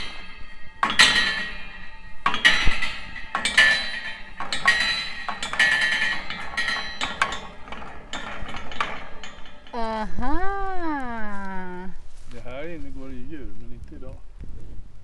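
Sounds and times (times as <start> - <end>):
metal gate parts clinking: 0.0 - 10.0.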